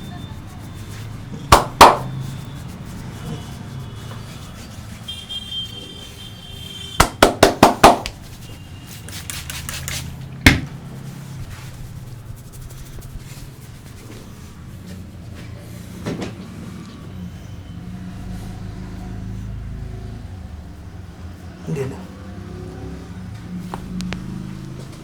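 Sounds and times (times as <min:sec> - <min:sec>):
sharp hand slaps: 0:01.6 - 0:02.1, 0:07.0 - 0:08.2.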